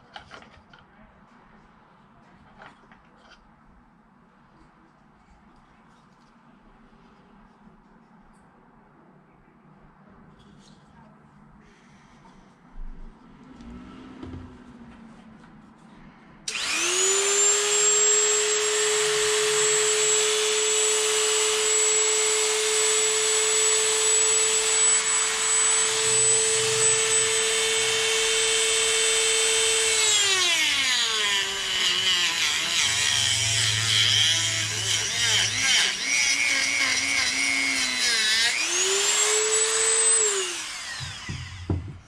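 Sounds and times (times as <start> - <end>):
rotary tool high whine: 16.5 - 42.0.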